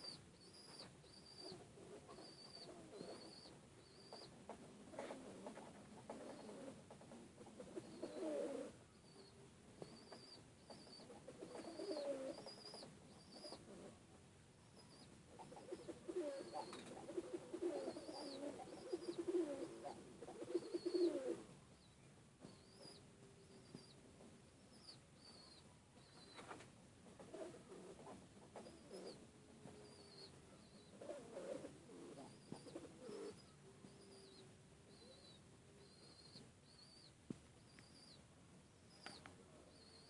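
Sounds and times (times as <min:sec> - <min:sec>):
pigeons cooing: 0:00.0 - 0:14.0, 0:14.8 - 0:21.6, 0:27.2 - 0:37.1.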